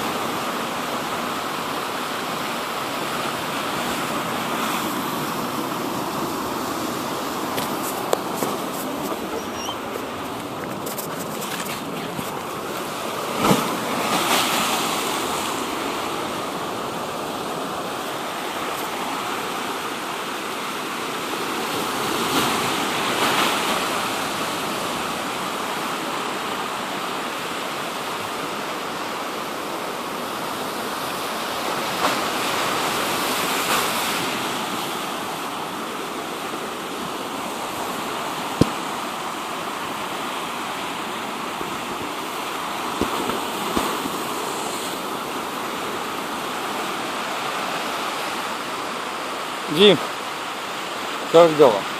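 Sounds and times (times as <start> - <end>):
sea surf washing ashore: 0.0 - 51.9.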